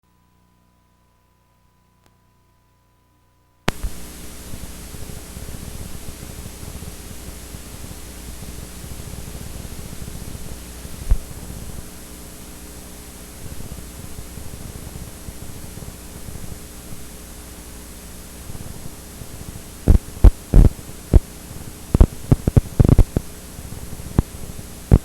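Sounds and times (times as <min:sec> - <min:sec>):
tape hiss: 0:00.0 - 0:25.0
click: 0:02.0 - 0:02.2, 0:03.7 - 0:04.0.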